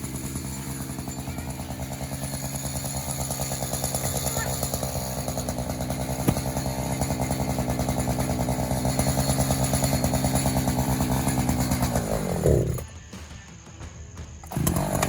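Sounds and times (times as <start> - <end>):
chainsaw cutting: 0.0 - 12.9, 14.4 - 15.0.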